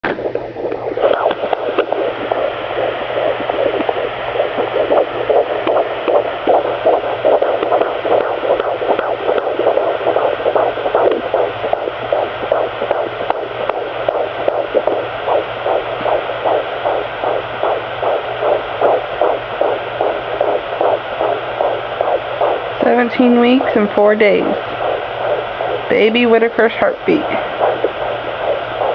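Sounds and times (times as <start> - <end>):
fetal heartbeat whooshing pulses: 0.0 - 28.9
steady low hum: 0.0 - 28.9
device hiss: 0.1 - 28.9.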